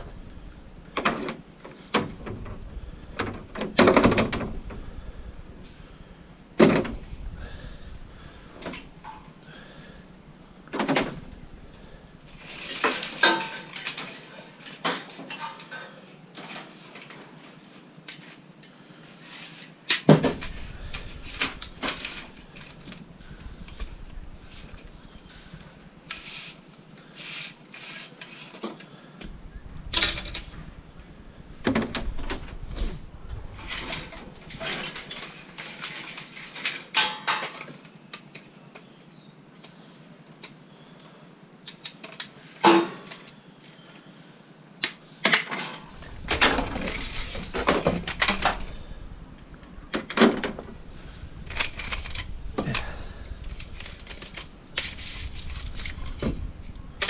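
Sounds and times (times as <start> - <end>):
scrap metal clanking and scraping: 12.4 - 17.2, 31.8 - 37.7, 45.4 - 48.9.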